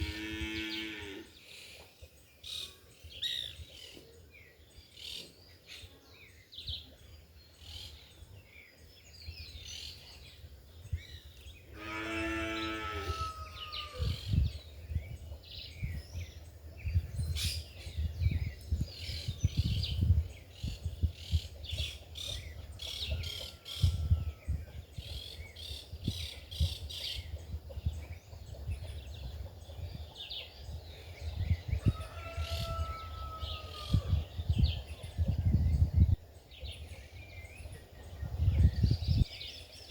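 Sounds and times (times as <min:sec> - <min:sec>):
small birds chirping: 0:00.4 - 0:39.9
wind gusting on microphone: 0:09.0 - 0:39.9.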